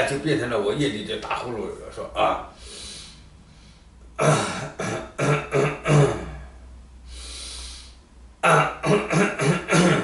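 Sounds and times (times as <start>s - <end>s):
long breathy hiss: 2.6s - 3.8s, 7.1s - 8.0s.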